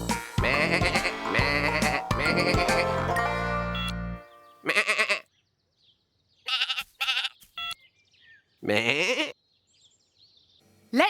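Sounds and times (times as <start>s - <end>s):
cartoon sheep bleating: 0.4s - 3.1s, 4.6s - 5.3s, 6.5s - 7.8s, 8.6s - 9.4s.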